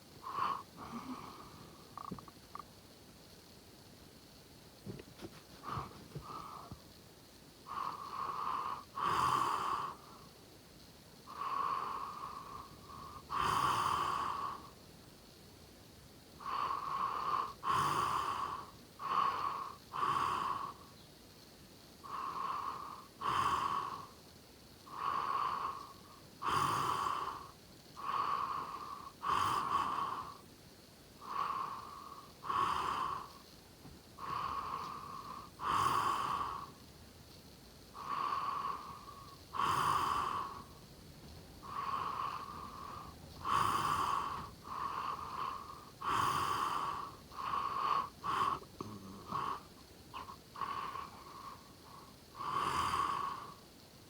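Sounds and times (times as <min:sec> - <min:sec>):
person snoring: 0:00.2 - 0:02.6, 0:24.9 - 0:30.4, 0:31.2 - 0:33.4, 0:34.2 - 0:36.8, 0:38.0 - 0:40.7, 0:41.6 - 0:53.6.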